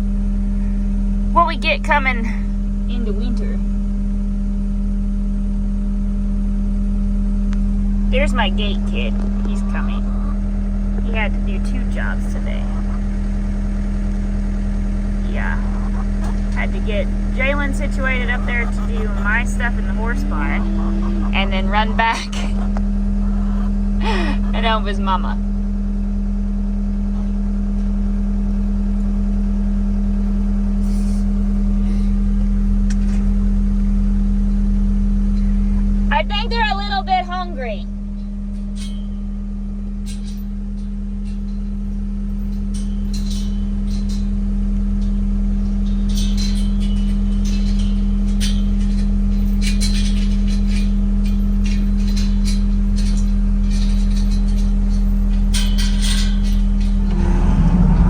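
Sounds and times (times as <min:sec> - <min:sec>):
vehicle engine running: 0:00.0 - 0:25.7, 0:27.3 - 0:38.1, 0:56.6 - 0:58.0.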